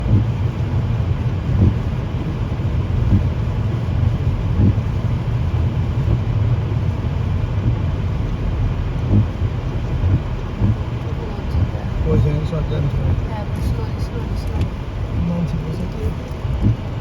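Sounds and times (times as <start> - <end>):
car engine and tyres rumbling: 0.0 - 17.0.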